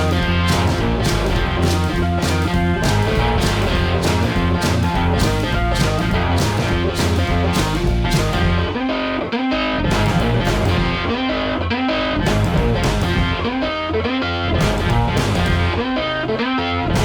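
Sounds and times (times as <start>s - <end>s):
rock music with distorted guitar: 0.0s - 17.0s.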